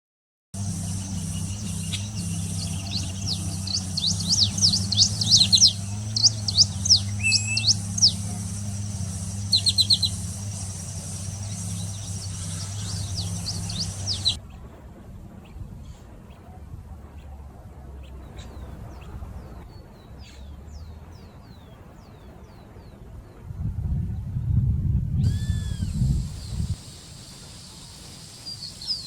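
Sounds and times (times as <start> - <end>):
small birds chirping: 0.6 - 14.4, 25.2 - 29.0
steady low hum: 0.6 - 14.4, 23.6 - 29.0
thin high tone: 0.6 - 14.4.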